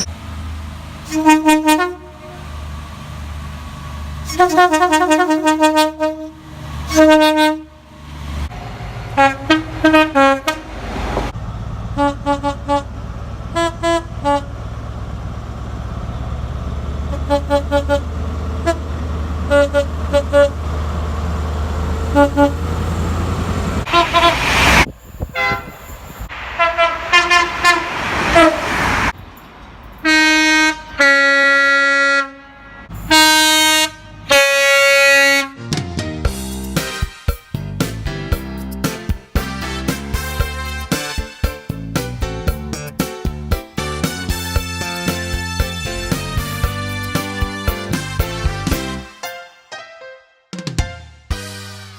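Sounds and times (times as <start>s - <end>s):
low engine rumble: 0.0s - 31.2s
train horns tooting: 1.0s - 2.6s, 4.2s - 7.8s, 9.1s - 11.1s, 11.9s - 14.6s, 17.1s - 20.6s, 22.1s - 23.0s, 23.8s - 29.1s, 30.0s - 35.7s, 39.4s - 41.5s, 44.0s - 49.2s
brief rush of noise: 23.8s - 29.2s.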